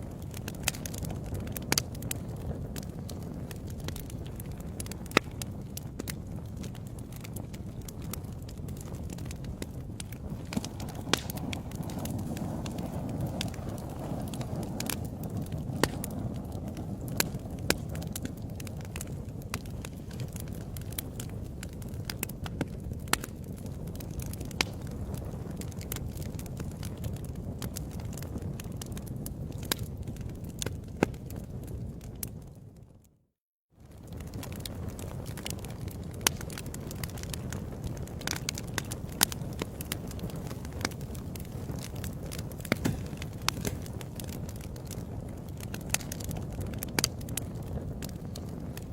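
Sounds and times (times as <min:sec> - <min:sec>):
wood fire crackling: 0:00.0 - 0:33.1, 0:33.8 - 0:48.9
low rumble of flames: 0:00.0 - 0:33.2, 0:33.8 - 0:48.9
sharp pops: 0:42.6 - 0:44.0.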